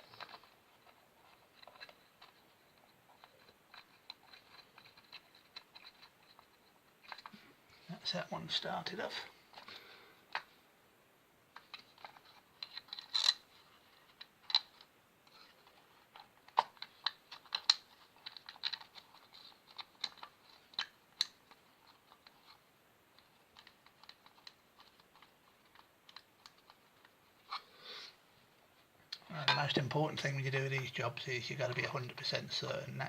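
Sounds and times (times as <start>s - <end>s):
screwdriver clicks and scrapes: 11.6s - 13.5s.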